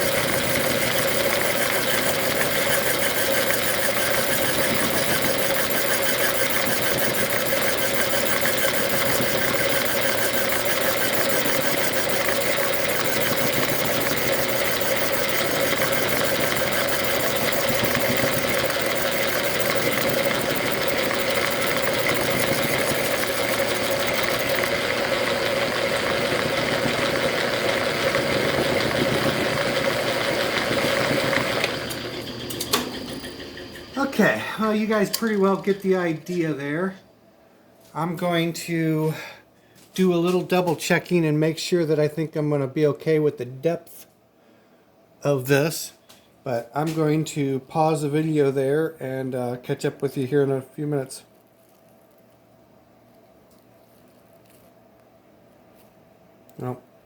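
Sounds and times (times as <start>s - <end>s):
metal lathe humming and whining: 0.0s - 35.9s
gear and belt chatter: 0.0s - 36.2s.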